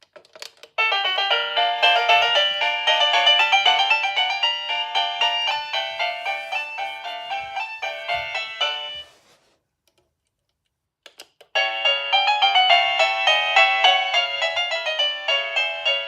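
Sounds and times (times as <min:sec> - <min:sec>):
electronic doorbell chime tune: 0:00.9 - 0:09.1, 0:11.6 - 0:16.0.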